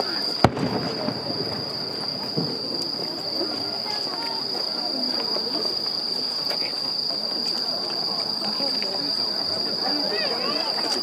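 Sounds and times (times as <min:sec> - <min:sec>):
insects chirring: 0:00.0 - 0:11.0
murmur of crowd chatting: 0:00.0 - 0:11.0.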